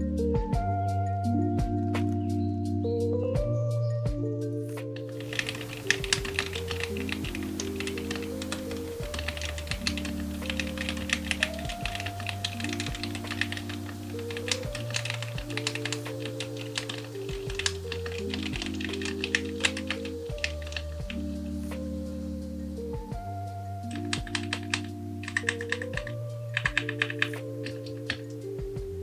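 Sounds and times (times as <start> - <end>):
mechanical keyboard typing: 5.0 - 21.5, 23.9 - 28.4.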